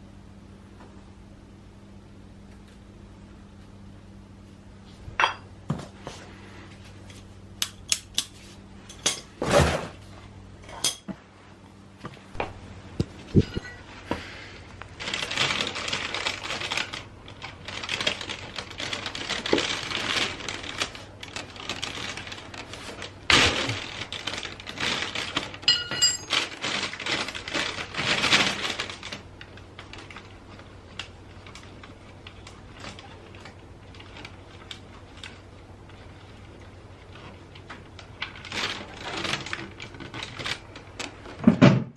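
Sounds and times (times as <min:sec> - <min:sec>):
metal tools clinking: 0:25.6 - 0:26.6.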